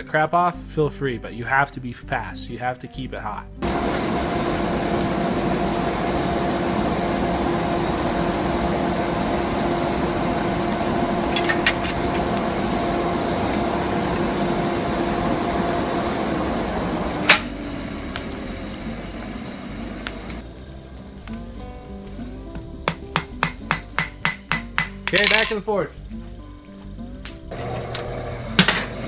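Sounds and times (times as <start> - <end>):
forge air blower humming: 3.6 - 24.2, 27.5 - 29.0.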